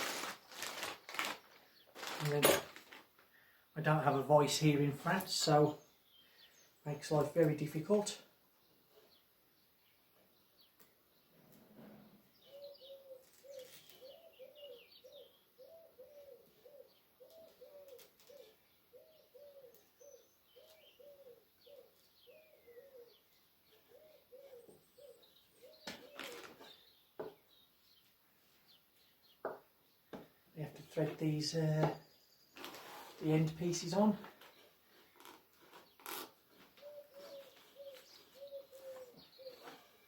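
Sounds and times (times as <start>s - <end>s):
small birds chirping: 0.0s - 2.4s, 3.2s - 40.0s
low cooing bird call: 11.7s - 27.0s, 36.1s - 40.0s.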